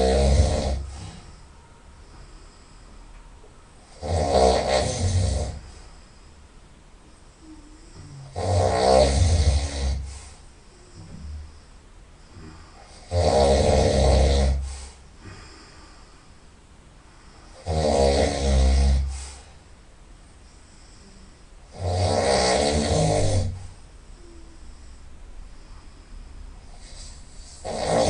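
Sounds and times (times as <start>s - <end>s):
person snoring: 0.0s - 1.4s, 3.8s - 5.8s, 7.4s - 11.6s, 12.2s - 15.6s, 17.4s - 19.5s, 20.8s - 24.8s, 26.7s - 28.0s
quiet breathing: 0.0s - 4.0s, 5.0s - 8.4s, 9.2s - 13.2s, 13.8s - 17.7s, 18.9s - 21.8s, 22.8s - 28.0s.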